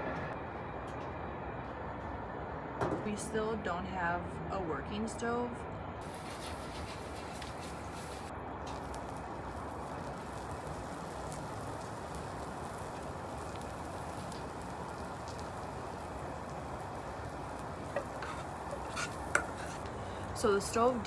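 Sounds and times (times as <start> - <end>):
food sizzling on griddle: 6.0 - 21.0.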